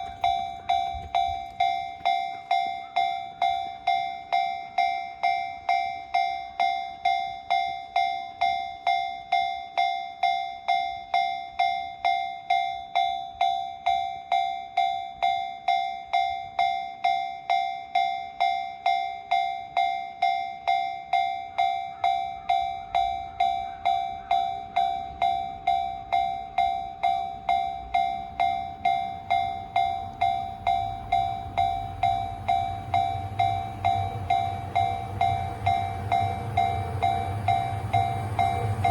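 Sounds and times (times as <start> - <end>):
low train rumble: 0.0 - 8.5, 21.4 - 38.9
level crossing bell clanging: 0.0 - 38.9.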